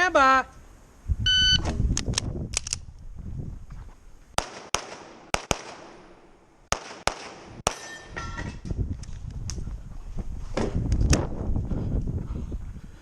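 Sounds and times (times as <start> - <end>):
gunshots: 4.4 - 8.0.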